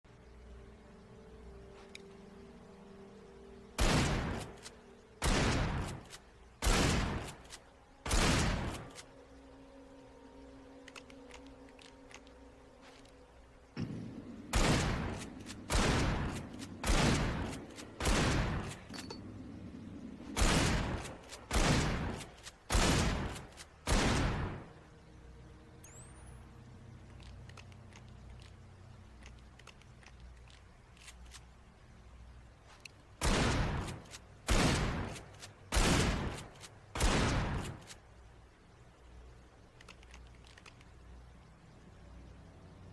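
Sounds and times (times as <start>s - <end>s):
shotgun blasts: 3.8s - 4.6s, 5.2s - 7.4s, 8.0s - 9.0s, 13.8s - 18.9s, 20.3s - 24.7s, 33.2s - 37.9s
shotgun pump clicks: 10.8s - 13.2s, 29.2s - 31.5s, 39.7s - 41.0s.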